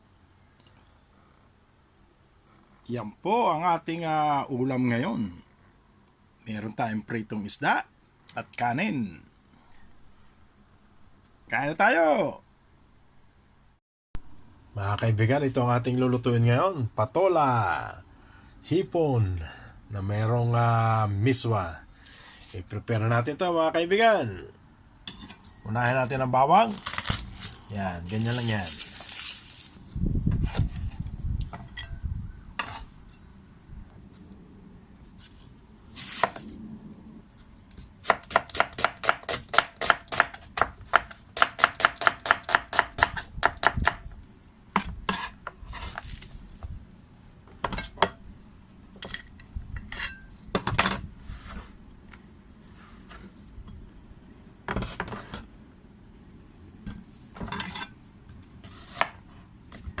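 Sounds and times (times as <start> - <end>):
knife chopping on cutting board: 38.0 - 44.0.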